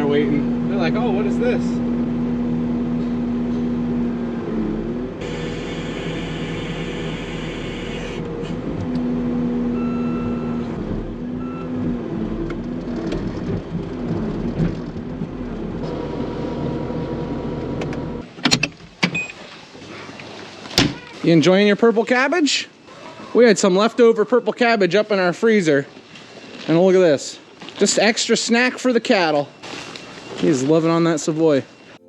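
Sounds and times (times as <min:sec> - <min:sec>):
loader engine running: 0:00.0 - 0:18.4.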